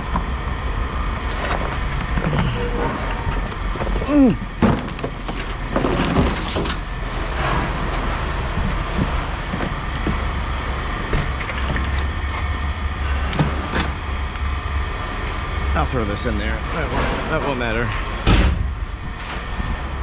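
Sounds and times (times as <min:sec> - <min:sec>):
low engine hum: 0:00.0 - 0:20.0
scrap metal knocking and clattering: 0:04.6 - 0:08.2.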